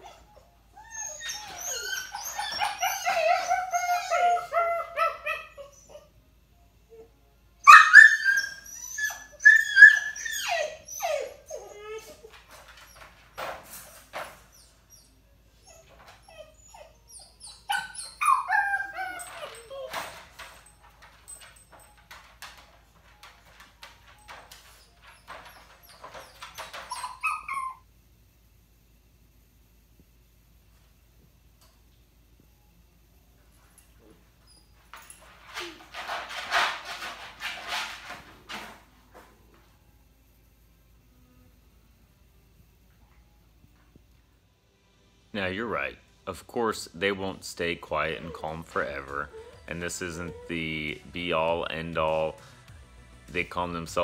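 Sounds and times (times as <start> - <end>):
puppy whining and crying: 0.0 - 27.9, 33.7 - 38.6, 48.0 - 52.2.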